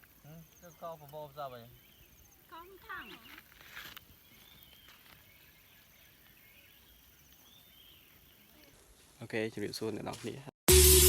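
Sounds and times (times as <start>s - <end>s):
distant bird chirps: 0.0s - 9.0s
faint rustle: 2.4s - 10.5s.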